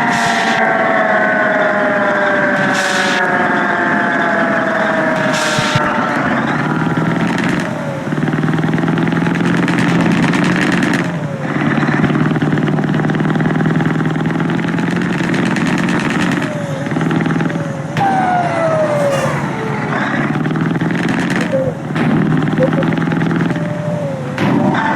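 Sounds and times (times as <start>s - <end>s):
bus engine running loudly: 0.0s - 24.9s
short falling whine: 18.0s - 23.7s.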